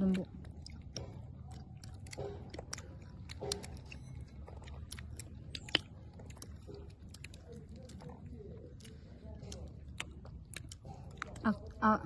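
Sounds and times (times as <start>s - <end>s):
chewing crunchy food: 0.0s - 12.0s
faint background voices: 7.1s - 12.0s.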